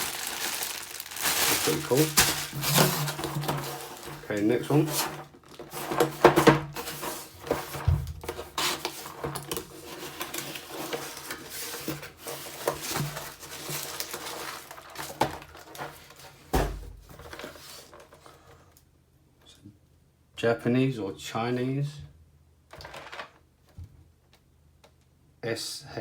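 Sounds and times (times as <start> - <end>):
packaging rustling and crinkling: 0.0 - 18.6, 22.7 - 23.4.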